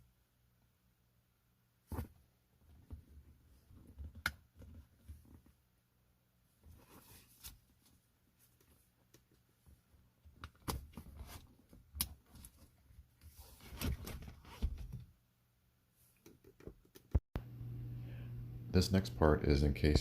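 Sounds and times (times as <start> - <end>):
steady low hum: 17.4 - 20.0.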